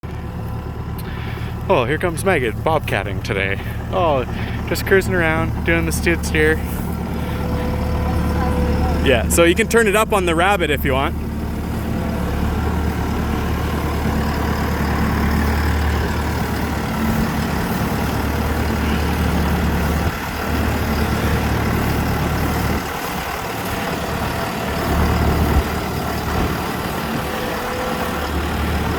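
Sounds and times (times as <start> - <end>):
skid steer engine running: 0.0 - 28.9.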